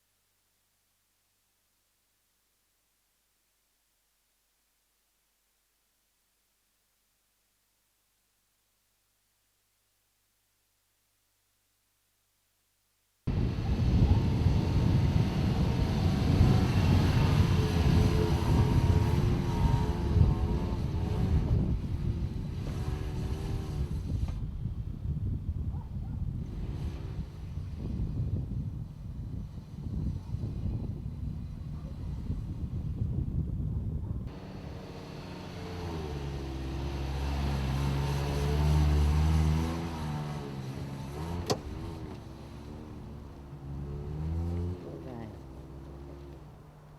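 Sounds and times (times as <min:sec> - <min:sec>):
vehicle engine running: 0:13.3 - 0:24.7, 0:34.3 - 0:46.9
wind buffeting microphone: 0:13.3 - 0:39.9.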